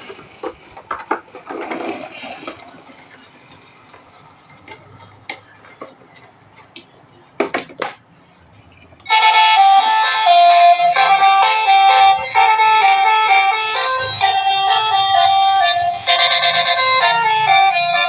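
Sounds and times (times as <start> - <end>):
loud toy tune: 9.1 - 18.0.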